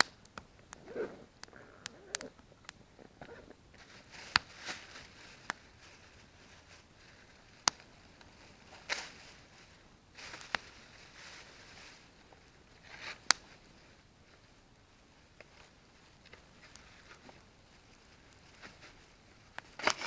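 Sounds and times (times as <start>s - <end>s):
campfire crackling and popping: 0.0s - 20.0s.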